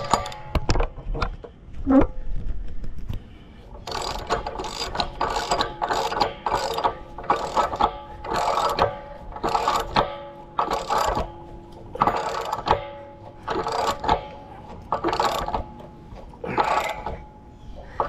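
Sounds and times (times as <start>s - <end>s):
ratchet wrench clicking: 3.8s - 11.3s, 12.0s - 12.8s, 13.4s - 15.9s, 16.5s - 17.2s.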